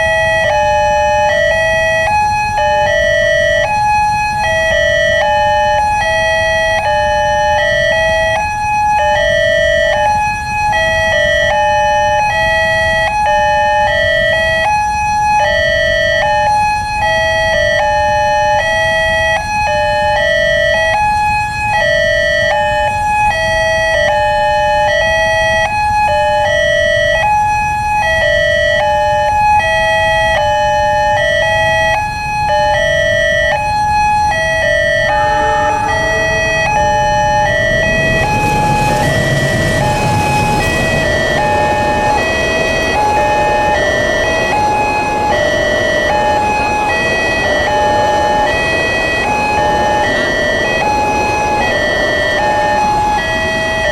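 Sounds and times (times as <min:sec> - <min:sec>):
two-tone level crossing sirens: 0:00.0 - 0:53.9
low rumble: 0:34.4 - 0:53.9.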